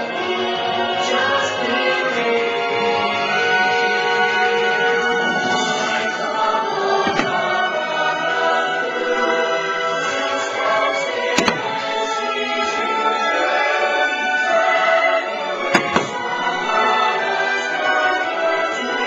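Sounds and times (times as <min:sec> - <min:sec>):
choir over orchestral music: 0:00.0 - 0:19.0
firework bangs: 0:07.0 - 0:07.8.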